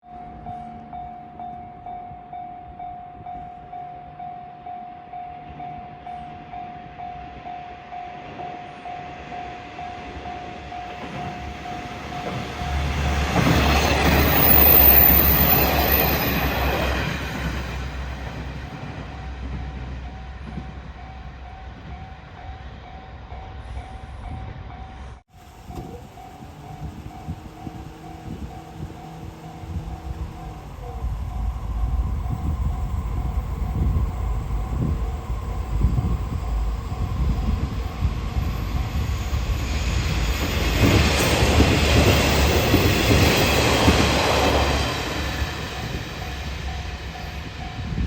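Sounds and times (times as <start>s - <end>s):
train wheels clattering on rails: 10.8s - 22.1s, 25.4s - 48.0s
level crossing warning bell: 19.6s - 48.0s.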